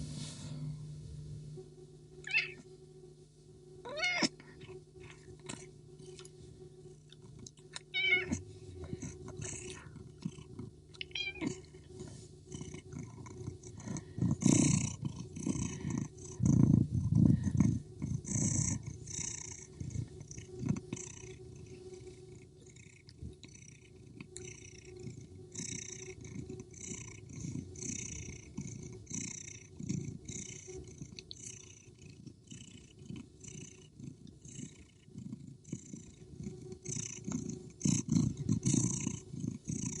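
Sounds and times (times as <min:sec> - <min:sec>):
cat purring: 0:01.5 - 0:02.7, 0:03.8 - 0:40.0.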